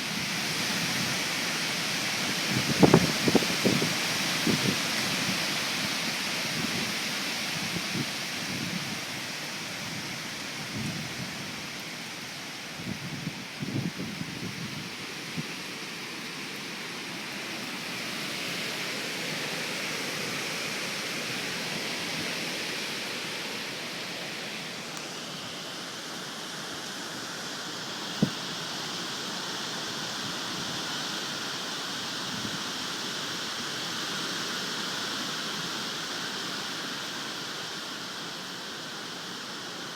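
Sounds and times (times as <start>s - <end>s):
heavy rain and wind rushing: 0.0s - 37.8s.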